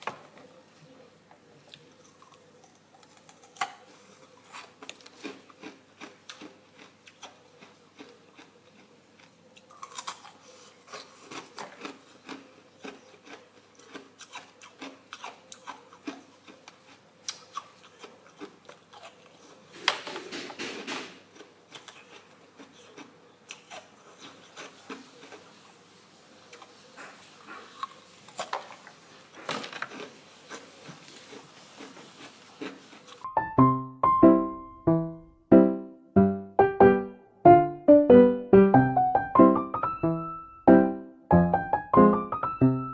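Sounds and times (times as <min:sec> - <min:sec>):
ice crunching while chewed: 0:01.6 - 0:19.7, 0:21.2 - 0:25.6, 0:26.6 - 0:33.3.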